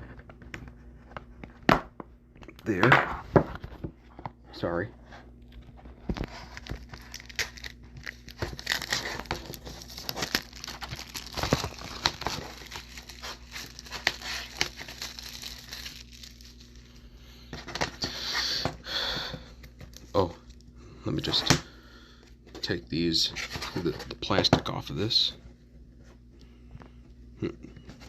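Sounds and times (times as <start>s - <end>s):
plastic wrapping crinkling and tearing: 6.1s - 17.0s.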